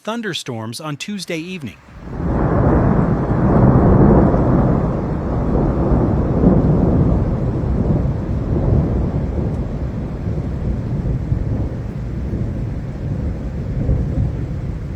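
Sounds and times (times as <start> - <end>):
storm rumble: 1.7 - 14.9.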